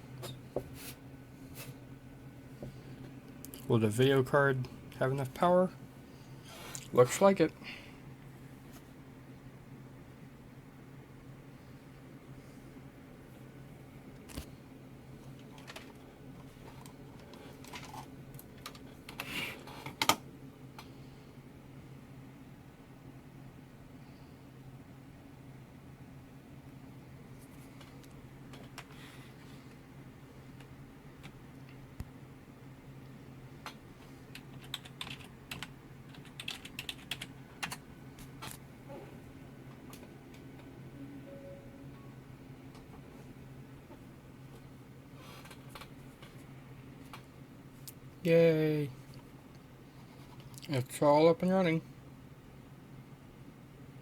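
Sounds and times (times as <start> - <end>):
computer humming: 12.9 - 19.2, 26.3 - 45.0
keyboard key presses: 33.6 - 37.8
low hum: 40.6 - 43.5.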